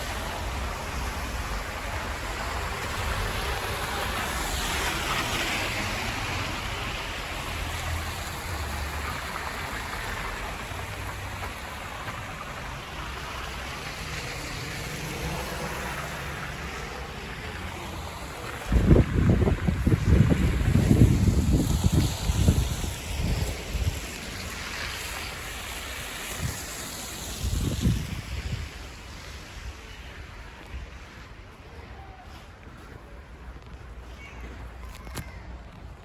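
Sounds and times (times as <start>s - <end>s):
blizzard wind buffeting microphone: 0.0s - 33.9s.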